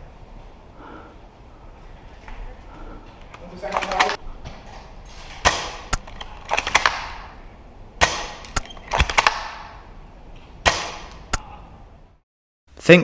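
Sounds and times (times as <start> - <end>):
airsoft rifle shots: 5.3 - 7.4, 8.0 - 9.9, 10.6 - 11.2.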